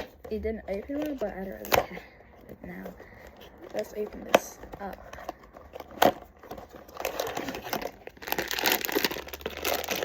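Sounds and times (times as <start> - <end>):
packaging crinkling and tearing: 3.1 - 10.0.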